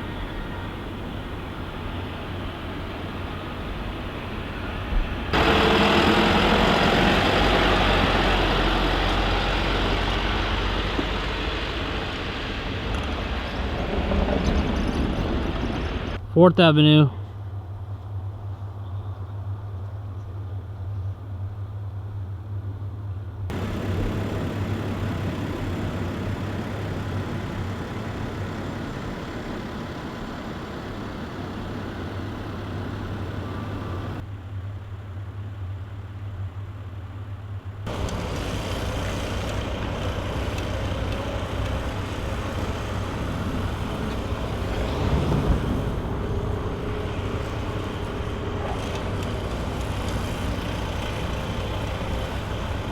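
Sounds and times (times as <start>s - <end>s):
vehicle engine drone: 0.0s - 16.2s, 23.5s - 34.2s, 37.8s - 52.9s
road and tyre noise: 0.0s - 16.3s, 22.6s - 52.9s.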